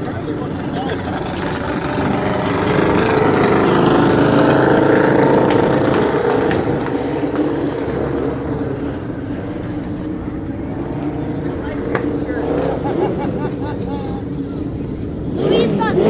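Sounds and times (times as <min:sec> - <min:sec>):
riding mower engines at full throttle: 0:00.0 - 0:16.0.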